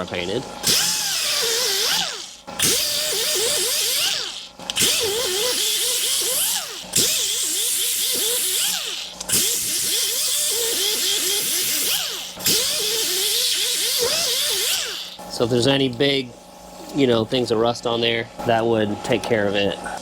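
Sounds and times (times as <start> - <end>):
power tool whining: 0.6 - 15.4.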